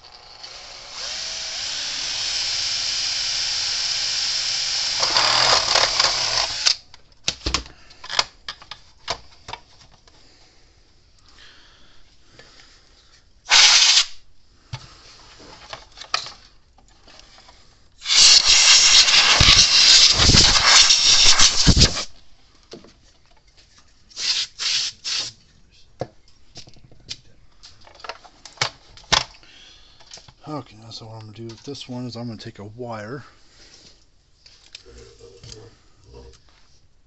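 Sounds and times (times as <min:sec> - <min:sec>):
hissing spray bursts: 0:13.5 - 0:14.2, 0:18.0 - 0:22.1, 0:24.1 - 0:25.4.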